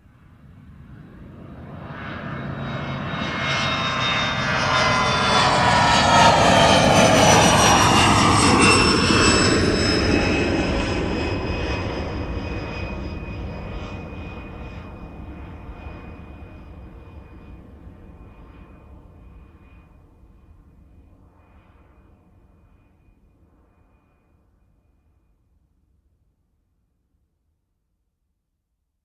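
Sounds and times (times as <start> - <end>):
jet airliner flying overhead: 0.0 - 24.4
high whining jet engine tones: 0.7 - 18.7.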